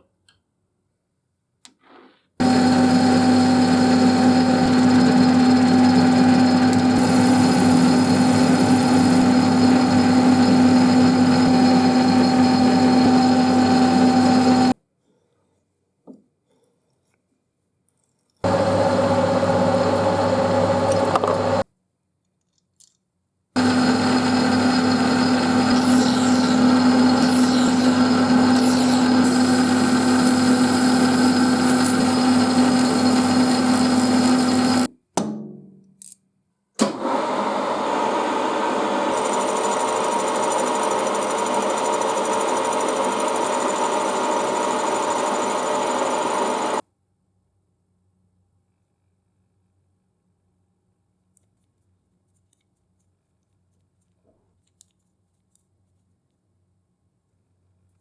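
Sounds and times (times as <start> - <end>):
electric machine tool motor: 2.4 - 14.8, 18.4 - 21.6, 23.6 - 34.9, 36.9 - 46.8
machine winding down: 2.4 - 14.8, 23.6 - 34.9, 36.8 - 46.8.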